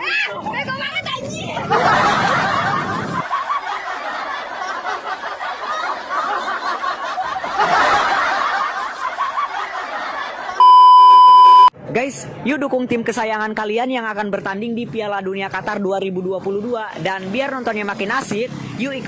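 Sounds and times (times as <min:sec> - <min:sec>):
crowd laughing: 0:01.6 - 0:11.4.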